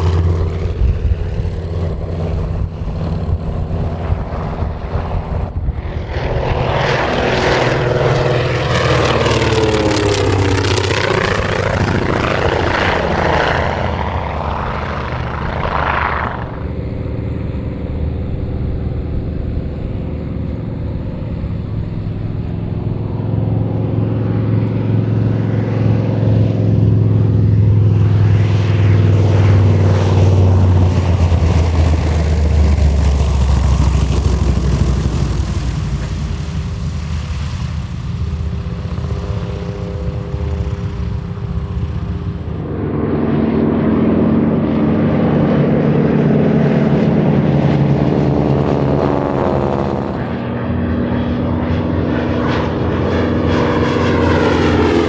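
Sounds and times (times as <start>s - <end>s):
propeller aircraft engine drone: 0.0s - 55.0s.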